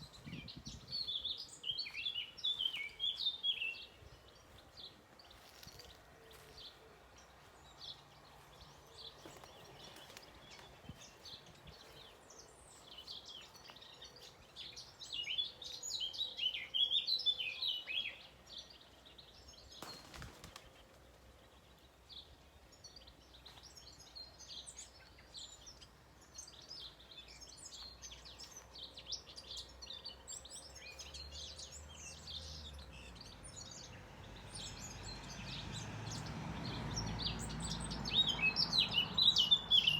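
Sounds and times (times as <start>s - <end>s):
songbirds chirping: 0.0s - 39.9s.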